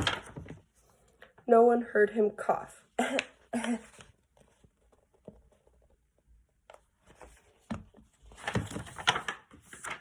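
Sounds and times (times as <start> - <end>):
paper page rustling: 7.0 - 10.0.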